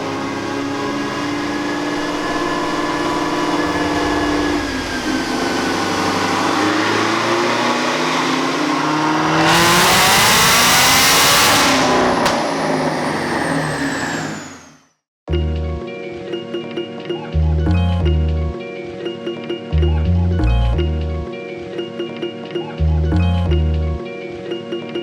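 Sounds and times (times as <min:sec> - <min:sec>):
car engine revving: 0:00.0 - 0:14.8
faint high supercharger whine: 0:00.0 - 0:14.9.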